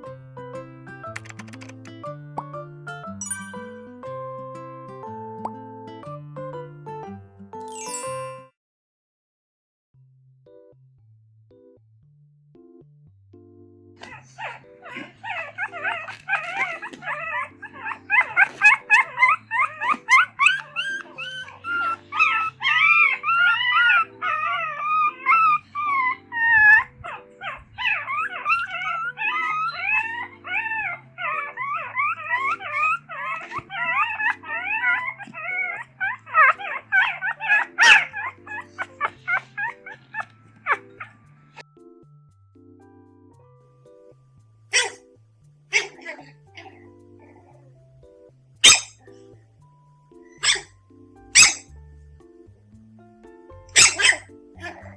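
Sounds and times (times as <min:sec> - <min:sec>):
electric piano backing track: 0:00.0 - 0:08.2, 0:12.6 - 0:54.9
puppies whimpering and howling: 0:14.0 - 0:41.3, 0:48.6 - 0:49.1, 0:50.2 - 0:50.7, 0:51.4 - 0:51.7, 0:53.8 - 0:54.9.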